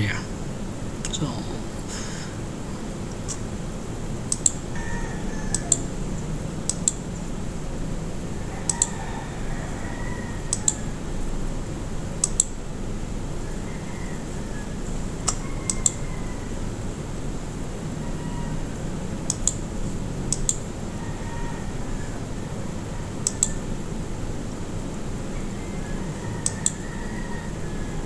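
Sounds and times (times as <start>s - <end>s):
low room and machine hum: 0.0s - 28.0s
sharp computer clicks: 4.3s - 4.7s, 5.5s - 5.9s, 6.6s - 7.0s, 10.5s - 10.8s, 12.2s - 12.6s, 19.3s - 19.7s, 20.3s - 20.6s, 23.2s - 23.6s.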